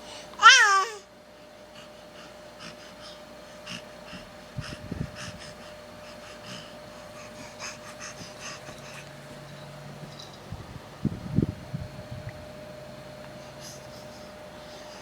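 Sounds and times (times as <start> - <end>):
baby breathing softly: 1.6 - 9.8, 13.3 - 15.0.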